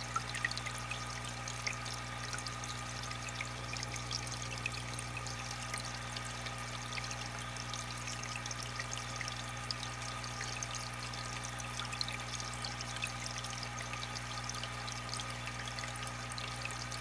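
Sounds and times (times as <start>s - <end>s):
aquarium water trickling and bubbling: 0.0s - 17.0s.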